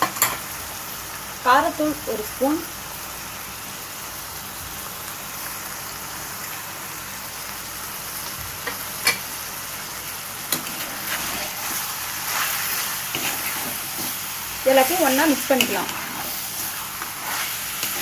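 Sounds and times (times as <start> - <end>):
food sizzling in a frying pan: 0.0 - 18.0
stirring sounds: 10.5 - 18.0.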